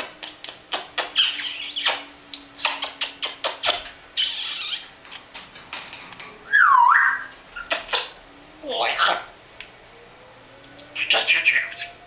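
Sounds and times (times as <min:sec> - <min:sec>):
parrot whistle swooping: 0:06.5 - 0:07.8, 0:11.0 - 0:12.0.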